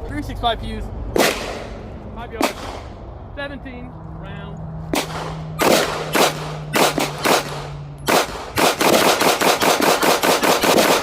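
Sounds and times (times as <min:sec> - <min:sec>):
pistol shots: 0:01.2 - 0:01.8, 0:02.4 - 0:03.0, 0:04.9 - 0:11.0.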